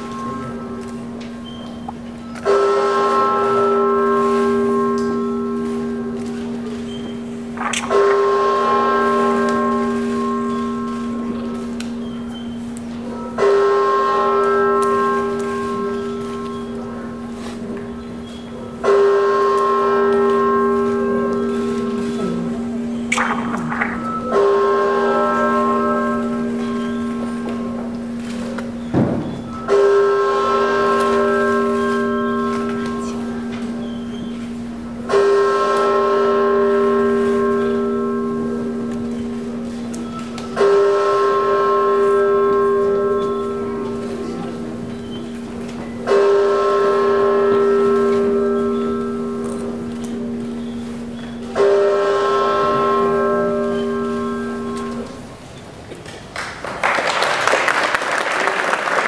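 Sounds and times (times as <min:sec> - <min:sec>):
large bell ringing: 0:00.0 - 0:55.4
bell ringing: 0:23.2 - 0:27.4
applause: 0:56.3 - 0:59.0.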